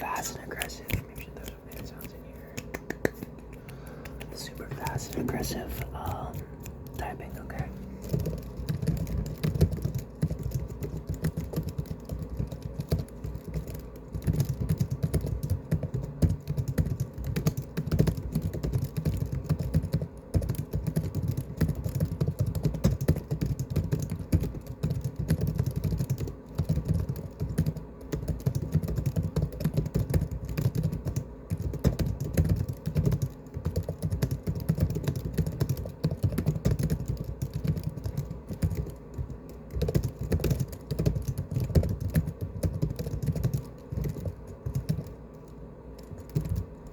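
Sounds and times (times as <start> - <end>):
laptop keyboard typing: 0.0 - 46.9.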